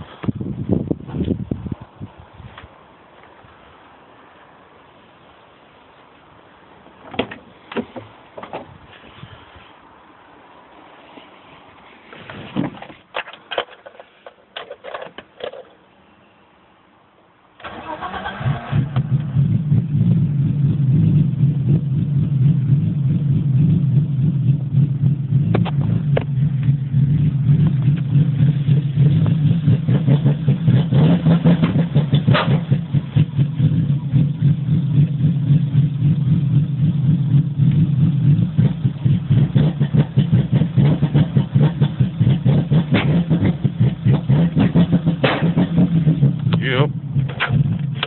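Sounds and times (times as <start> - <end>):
car engine idling with misfire: 17.6 - 48.0.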